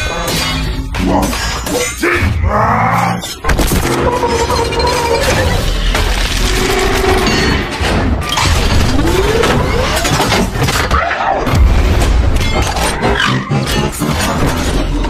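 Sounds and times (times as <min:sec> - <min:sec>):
mechanical whines: 0:03.3 - 0:11.4.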